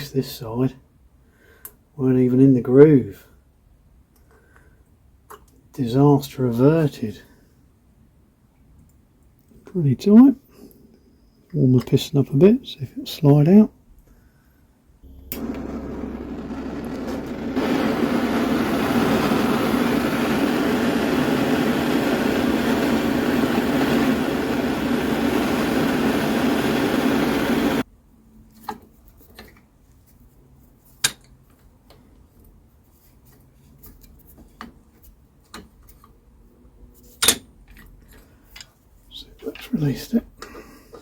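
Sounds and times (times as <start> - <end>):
heat gun running: 15.1 - 27.8.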